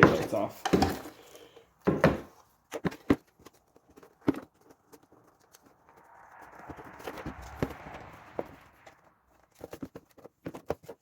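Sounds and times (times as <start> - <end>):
sharp knocks and clicks on plastic: 1.8 - 5.0.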